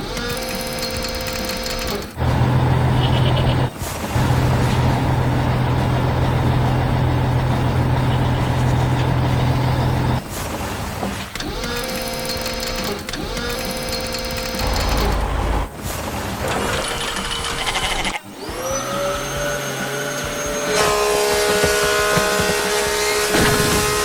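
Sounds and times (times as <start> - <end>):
mechanical whine: 0.0 - 10.2, 11.4 - 15.9
heavy machinery engine drone: 0.0 - 24.0.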